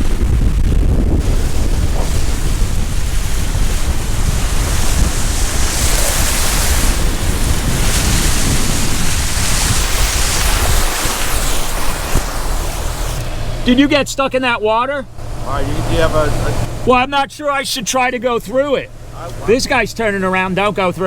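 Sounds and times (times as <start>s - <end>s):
hiss of wind-driven rain: 0.0s - 13.8s
wind gusting on microphone: 0.0s - 17.2s
heavy low rumble: 0.0s - 21.0s.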